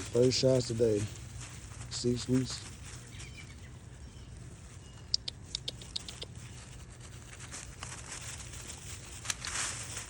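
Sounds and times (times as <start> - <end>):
light rustling: 0.0 - 10.0
small sharp clicks: 5.1 - 6.4.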